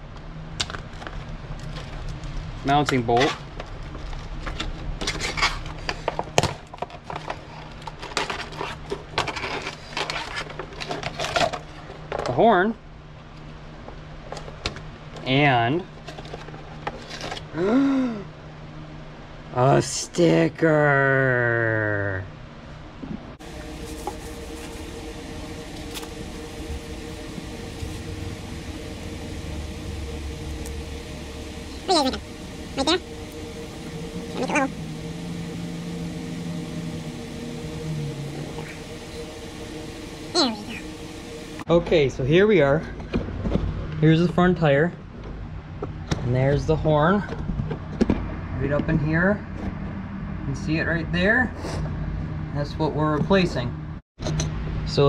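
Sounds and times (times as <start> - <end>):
low steady hum: 23.0 - 42.9.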